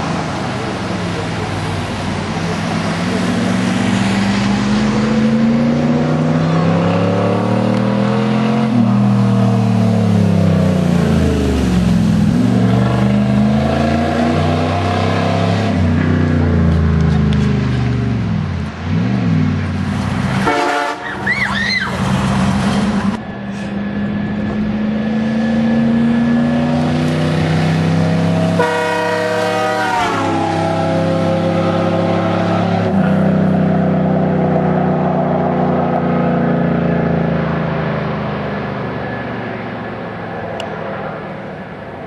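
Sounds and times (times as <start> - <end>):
car engine driving by: 0.0 - 42.0
air horn blasts: 20.4 - 21.9, 28.5 - 32.7.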